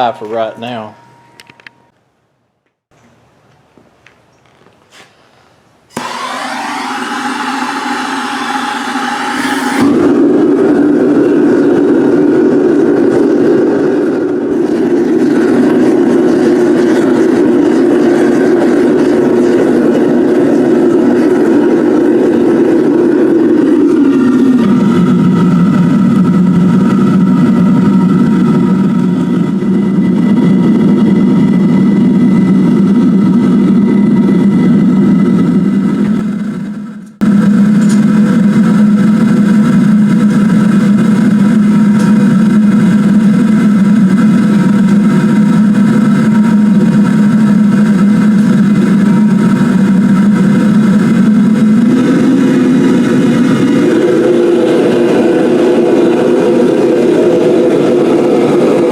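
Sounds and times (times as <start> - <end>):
propane burner roaring: 5.9 - 58.9.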